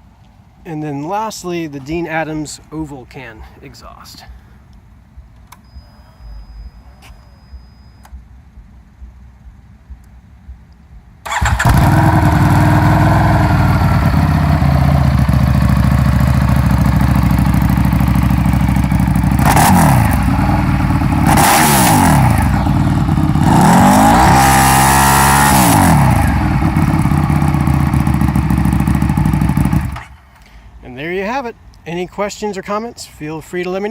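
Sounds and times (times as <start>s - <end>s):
motorcycle engine idling and revving: 11.2s - 30.2s.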